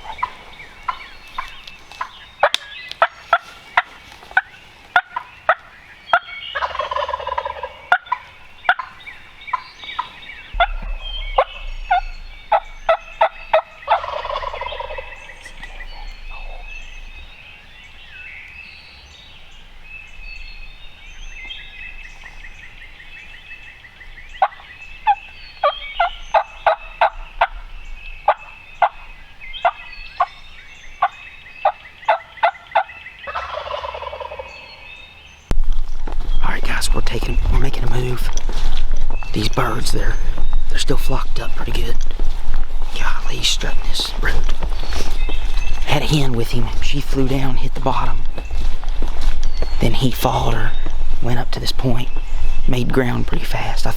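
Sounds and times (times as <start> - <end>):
turkey gobbling: 0.0 - 17.6, 24.4 - 30.4, 31.0 - 34.8
small birds singing: 0.0 - 53.9
sharp clicking notes: 10.5 - 17.2.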